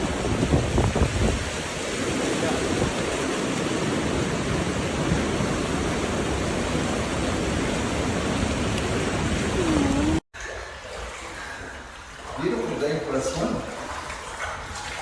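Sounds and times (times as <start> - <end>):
hurricane storm rushing: 0.0 - 10.2.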